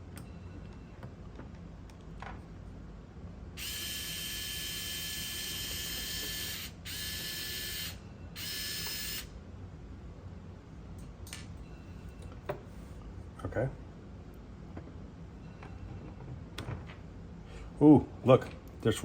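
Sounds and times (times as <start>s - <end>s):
electric screwdriver motor whining: 3.6s - 9.3s.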